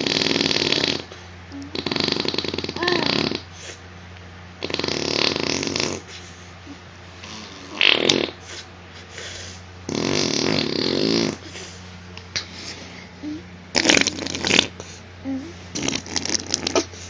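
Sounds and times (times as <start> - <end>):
person imitating fart noises: 0.0 - 3.5, 7.2 - 8.4, 9.9 - 11.4, 13.7 - 14.8, 15.7 - 16.9.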